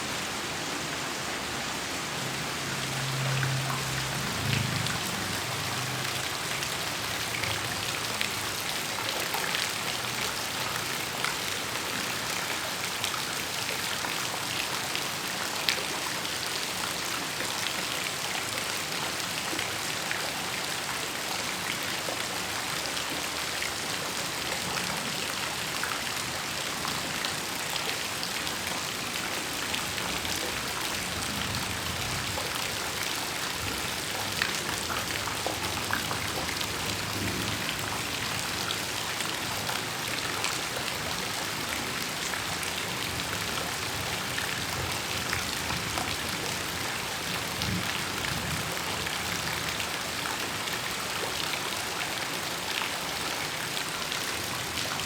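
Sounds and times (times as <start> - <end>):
heavy rain falling: 0.0 - 55.0
raindrops ticking on surfaces: 1.9 - 55.0.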